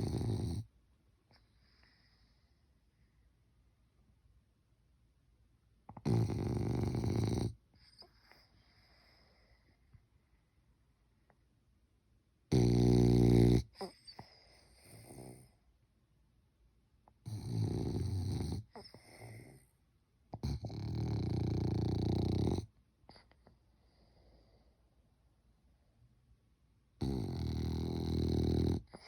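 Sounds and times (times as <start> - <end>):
dog snoring: 0.0 - 0.7, 5.9 - 9.8, 12.5 - 15.6, 17.2 - 19.7, 20.3 - 24.7, 27.0 - 29.0
dog breathing softly: 7.7 - 10.7.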